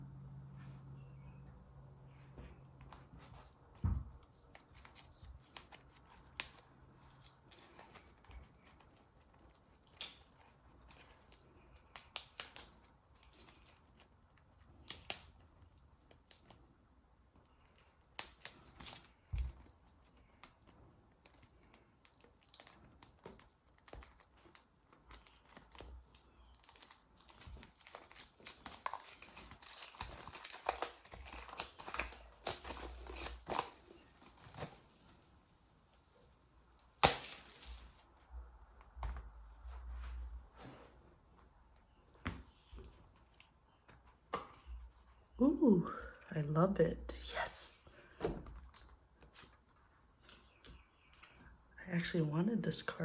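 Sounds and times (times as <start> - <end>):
packaging tearing and crinkling: 4.4 - 16.6, 17.4 - 35.2, 36.8 - 38.1.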